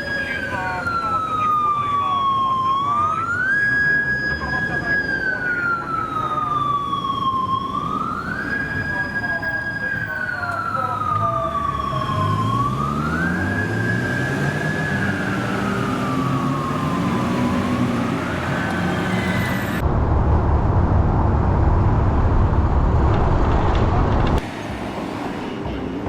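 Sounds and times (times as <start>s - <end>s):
police siren sweeping: 0.0s - 19.9s
loud low rumble: 19.8s - 24.4s.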